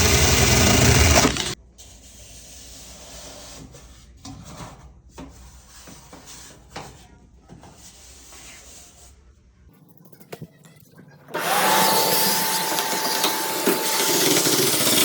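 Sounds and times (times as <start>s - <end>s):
motor-driven machine rushing: 0.0s - 1.6s, 11.4s - 15.0s.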